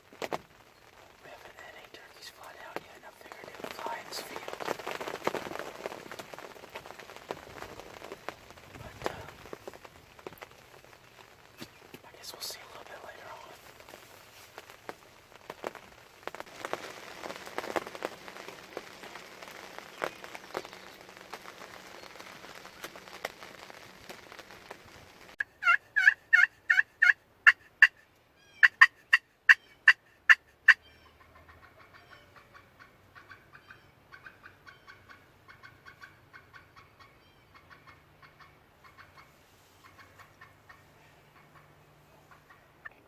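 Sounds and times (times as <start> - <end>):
soft hiss with ticks: 0.0 - 25.4, 38.8 - 43.0
rapid repeated bird notes: 16.5 - 24.6
turkey yelps: 25.4 - 42.7.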